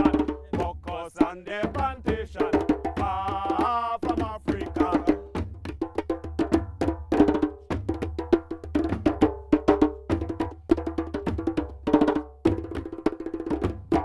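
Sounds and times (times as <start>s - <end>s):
drum ensemble playing: 0.0s - 5.5s.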